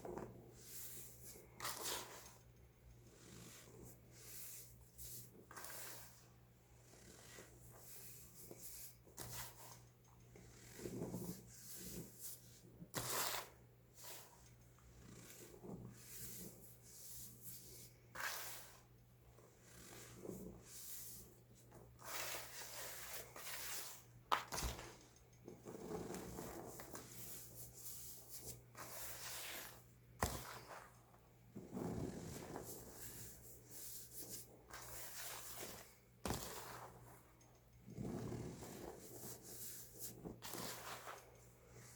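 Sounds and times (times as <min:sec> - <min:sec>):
baking soda crunching: 0:34.8 - 0:37.1.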